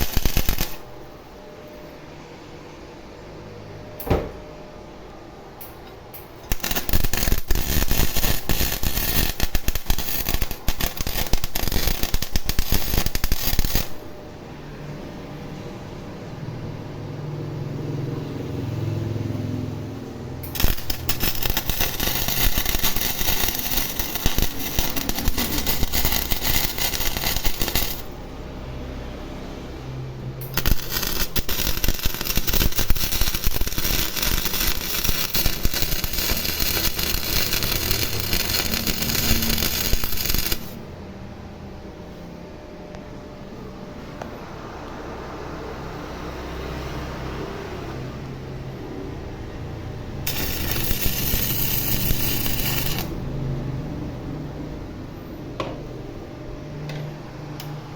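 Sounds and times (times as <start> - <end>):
welder arc crackling: 0.0 - 1.2, 6.2 - 14.2, 20.4 - 28.2, 30.4 - 40.8, 50.3 - 53.2.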